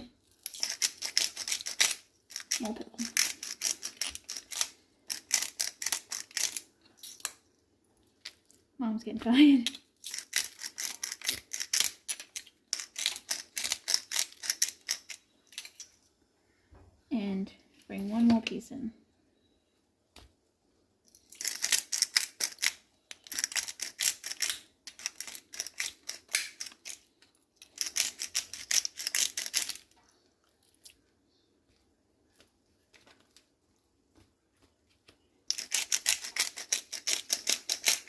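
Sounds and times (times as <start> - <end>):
pepper mill grinding: 0.2 - 7.3, 10.0 - 15.7, 21.1 - 30.0, 35.5 - 38.0.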